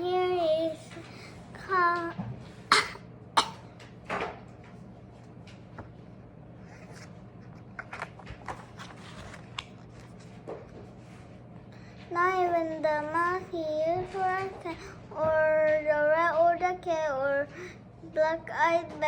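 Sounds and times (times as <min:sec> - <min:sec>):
low steady hum: 0:00.0 - 0:19.0
book pages turning: 0:06.6 - 0:11.0.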